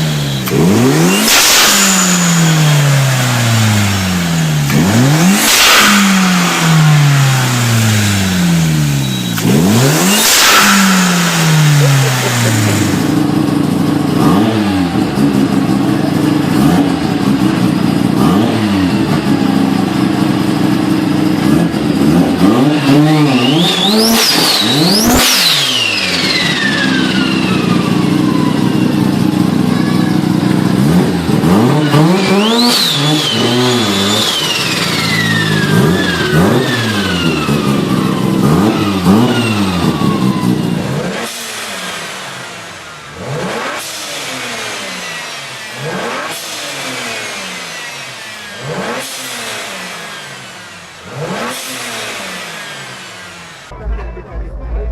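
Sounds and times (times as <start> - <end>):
car engine revving in blips: 0.0 - 53.8
turbo whistle: 8.7 - 12.1, 22.9 - 29.1.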